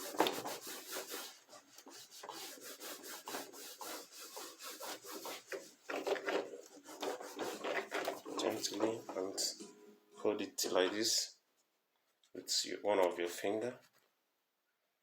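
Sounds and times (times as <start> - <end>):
cloth wiping piano keyboard: 0.0 - 9.6.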